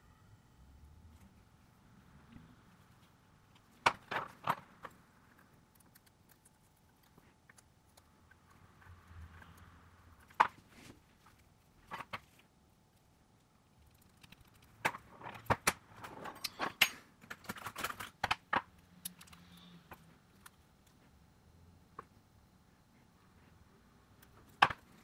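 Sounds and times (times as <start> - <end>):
tools and parts clicking and tapping: 13.9 - 20.6.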